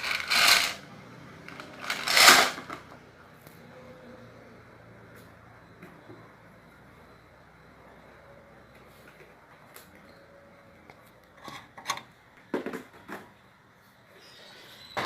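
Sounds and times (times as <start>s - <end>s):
small objects being handled: 0.0s - 0.8s, 1.5s - 2.8s.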